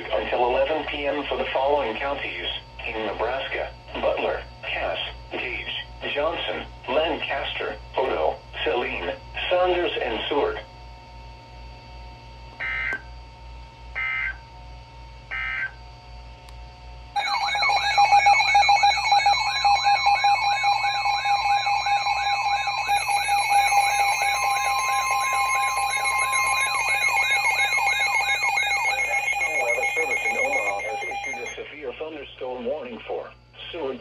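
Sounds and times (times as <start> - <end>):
warbling electronic alarm: 12.6 - 13.1, 13.9 - 14.5, 15.2 - 16.0, 17.2 - 31.7
digital data bursts: 17.2 - 31.7.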